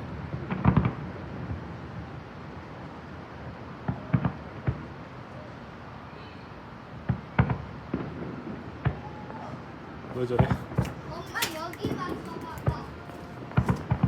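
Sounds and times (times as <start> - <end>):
fireworks booming: 0.0 - 2.2, 3.8 - 5.0, 7.0 - 14.0
crowd hum: 8.9 - 14.0.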